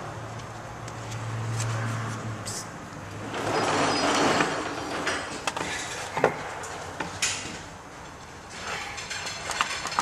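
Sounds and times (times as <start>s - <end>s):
tools clicking and knocking: 8.5s - 10.0s.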